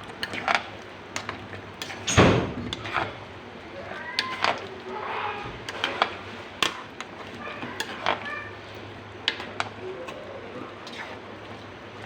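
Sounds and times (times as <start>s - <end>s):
faint voices: 3.6s - 6.0s, 6.6s - 9.0s, 9.7s - 11.2s.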